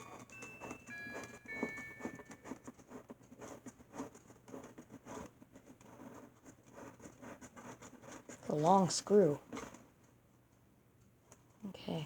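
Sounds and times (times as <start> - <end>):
electronic clock chime: 0.0 - 2.6.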